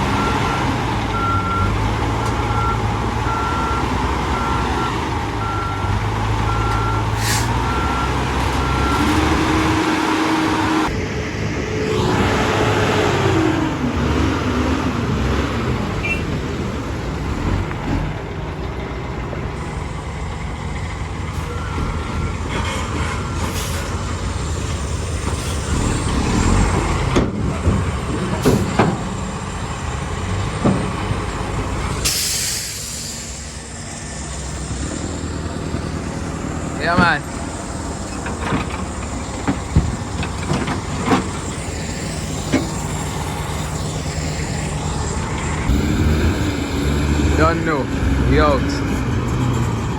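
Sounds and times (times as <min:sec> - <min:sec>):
truck diesel engine running: 0:00.0 - 0:49.9
air brake hiss: 0:07.2 - 0:07.6, 0:22.8 - 0:24.0, 0:32.0 - 0:33.6.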